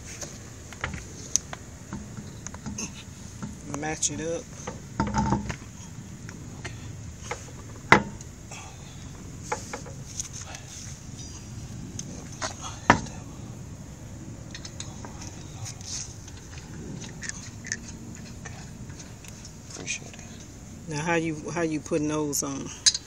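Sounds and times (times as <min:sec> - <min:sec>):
lug nuts clicking and clinking: 0:04.5 - 0:08.3, 0:14.4 - 0:20.5, 0:22.7 - 0:23.0.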